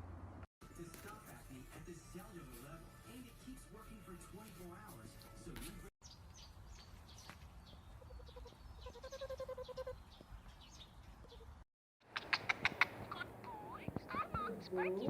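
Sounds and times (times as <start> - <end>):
bleating: 8.1 - 10.0
loud sharp clicks: 12.1 - 13.1.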